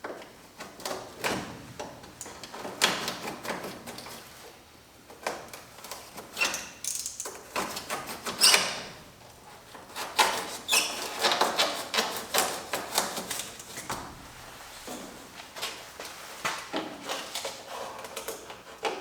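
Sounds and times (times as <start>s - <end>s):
foam squeaks: 10.6s - 11.2s.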